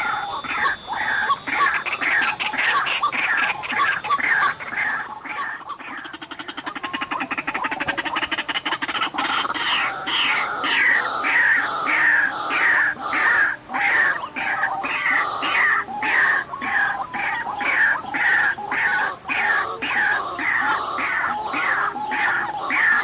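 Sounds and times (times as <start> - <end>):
waterhen calling: 0.0 - 23.0.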